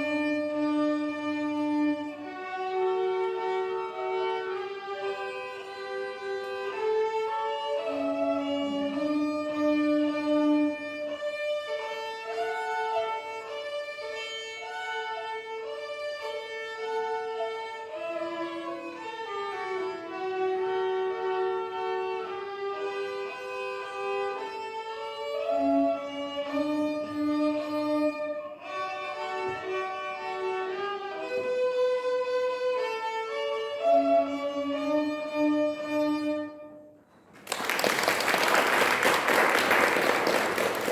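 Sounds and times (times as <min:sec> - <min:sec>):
violin duet: 0:00.0 - 0:37.2
applause: 0:37.3 - 0:40.9.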